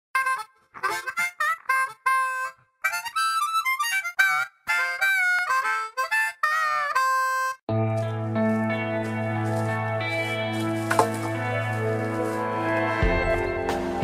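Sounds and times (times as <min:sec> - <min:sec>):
solo harmonica tune: 0:00.2 - 0:10.9.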